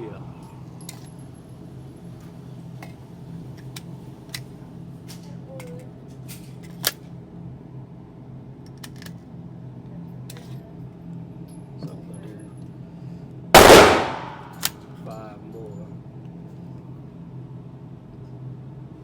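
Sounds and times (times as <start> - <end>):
sharp loud click: 13.6 - 14.7
steady low hum: 13.6 - 14.7.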